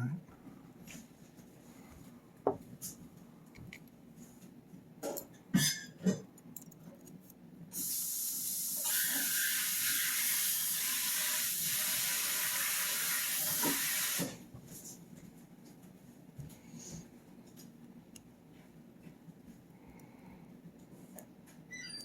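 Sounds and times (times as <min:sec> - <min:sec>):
spraying hiss: 0:07.8 - 0:14.4.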